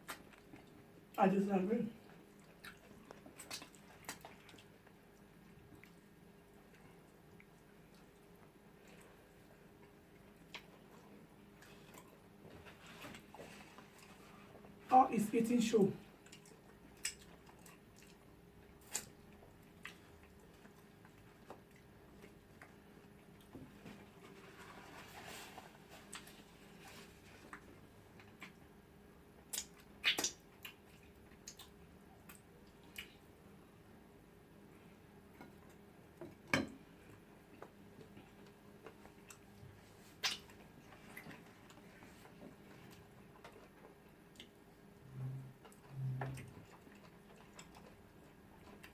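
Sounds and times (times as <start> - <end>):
mouth clicks while chewing: 0.0 - 0.8, 2.5 - 5.0, 10.2 - 11.0, 16.2 - 22.8, 29.4 - 33.2, 40.2 - 41.4, 43.4 - 44.6
chewing and mouth noises: 0.0 - 1.2, 2.0 - 14.8, 16.0 - 33.3, 37.0 - 48.9.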